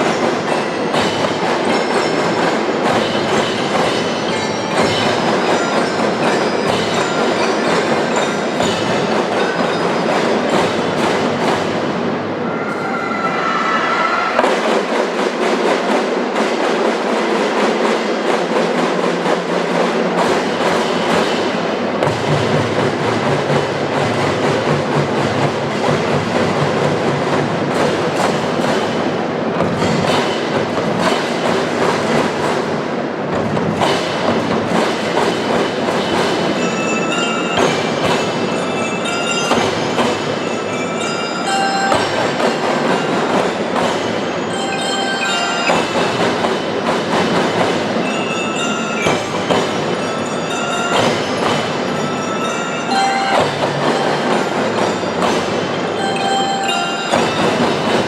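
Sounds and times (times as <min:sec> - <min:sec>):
snare and marching drums: 0:00.0 - 0:12.6, 0:14.4 - 0:58.0
high bell-like notes: 0:36.4 - 0:58.0.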